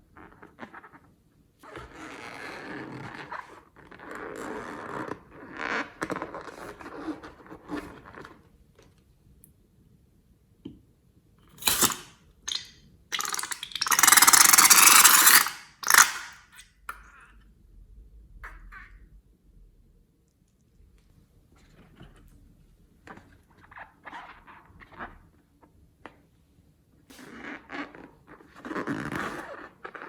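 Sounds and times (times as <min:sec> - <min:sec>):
slime squelching: 0:11.6 - 0:16.4.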